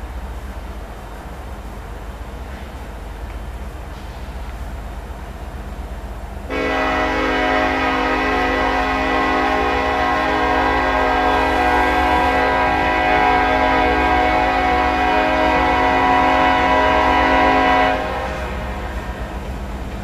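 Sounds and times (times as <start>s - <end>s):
train rumble: 0.0s - 20.0s
locomotive air horn blast: 6.5s - 19.3s.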